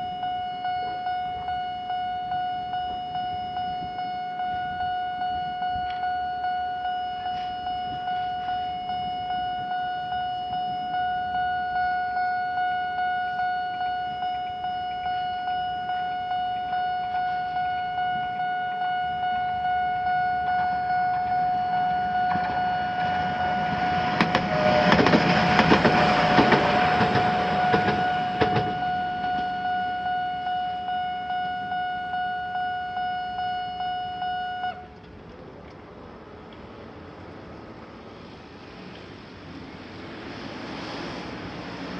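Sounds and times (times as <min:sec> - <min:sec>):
level-crossing warning bell dinging: 0:00.0 - 0:35.1
train wheels clicking over rail joints: 0:20.5 - 0:29.7.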